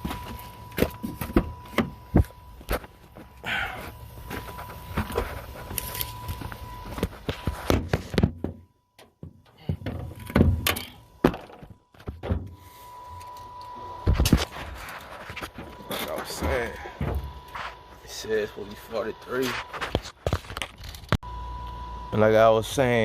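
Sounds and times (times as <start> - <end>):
steady high-pitched tone: 0.0 - 23.0
knocks and clunks of handling: 6.9 - 12.6.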